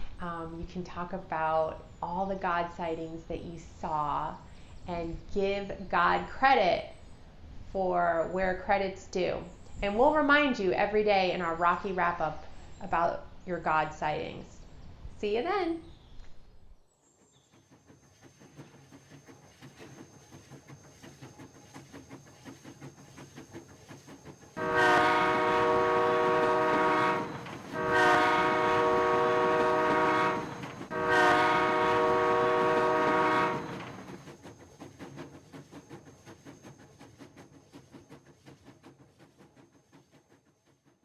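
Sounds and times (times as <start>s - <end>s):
train wheels clickety-clack: 17.0s - 41.0s
train horn blasts: 24.6s - 34.0s.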